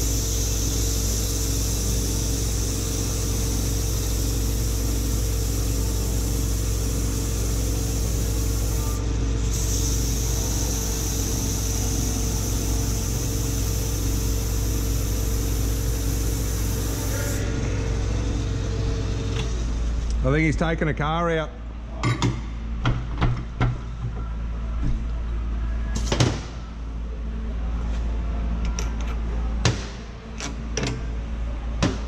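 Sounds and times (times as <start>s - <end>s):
brake lathe motor humming: 0.0s - 20.2s.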